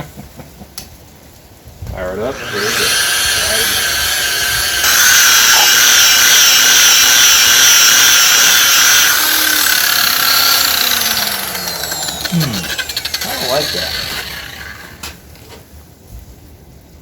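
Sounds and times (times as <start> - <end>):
electric polisher whining: 2.2 - 15.2.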